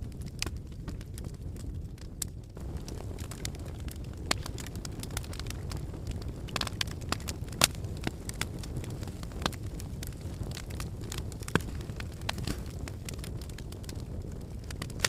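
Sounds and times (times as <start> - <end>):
low rumble of flame: 0.0 - 15.0
wood fire crackling and popping: 0.0 - 15.0.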